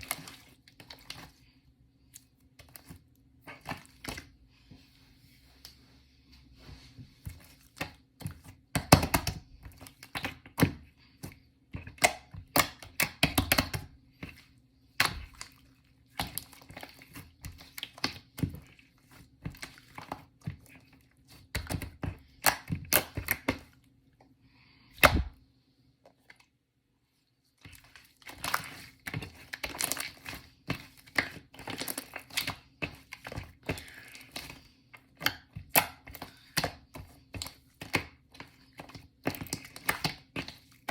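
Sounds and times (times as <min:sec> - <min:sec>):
slime squishing: 0:00.0 - 0:04.6, 0:06.7 - 0:24.0, 0:27.4 - 0:40.9.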